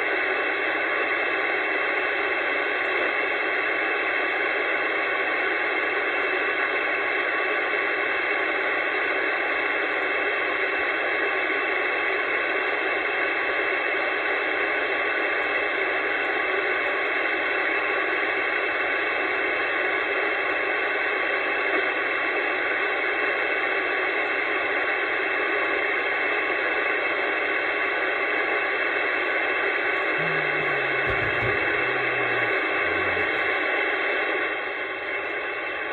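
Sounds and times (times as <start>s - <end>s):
radio static hiss: 29.2s - 33.6s
faint low tones: 29.9s - 33.6s.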